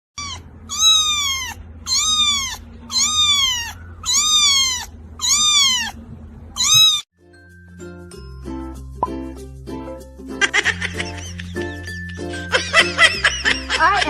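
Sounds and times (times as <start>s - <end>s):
cat meowing: 0.2s - 6.0s, 6.6s - 7.1s
low steady hum: 0.2s - 7.0s.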